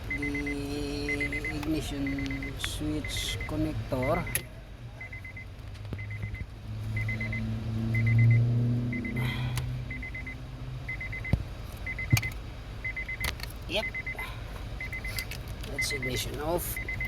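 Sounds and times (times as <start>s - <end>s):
low engine hum: 0.0s - 17.0s
electronic beeper high beeps: 7.0s - 9.2s.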